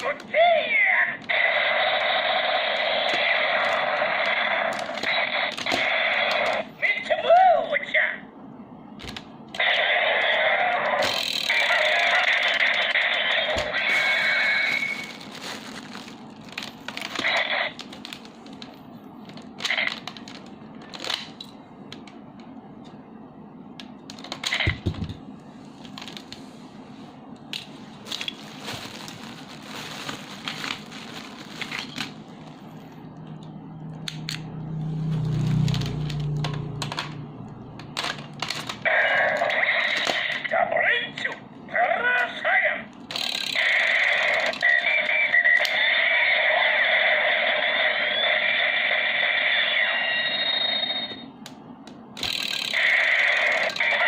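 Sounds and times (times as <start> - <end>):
toy electronic sound playback: 9.6 - 15.1, 43.1 - 51.2, 52.2 - 54.0
plastic toy clicks and knocks: 52.2 - 52.8.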